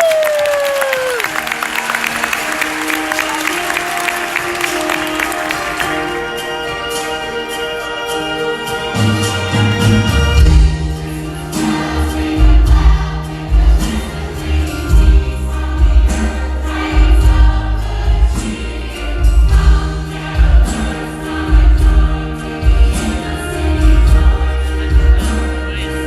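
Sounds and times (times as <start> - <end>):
choir singing: 1.5 - 26.0
band with pulsing bass beat: 9.2 - 26.0.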